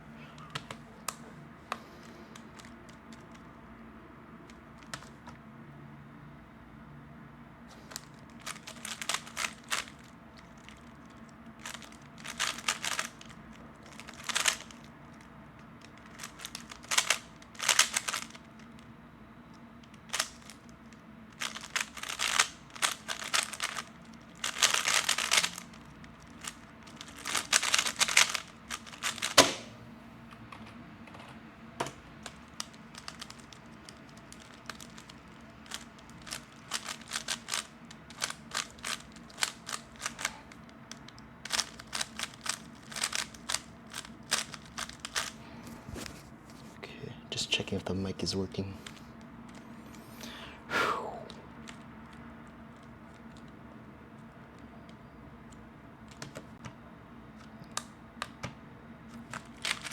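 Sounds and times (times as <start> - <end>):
plastic puzzle cube clacking: 2.4 - 3.5, 4.5 - 5.3, 7.9 - 18.9, 19.8 - 29.6, 31.8 - 45.4, 52.7 - 53.6, 57.4 - 59.9.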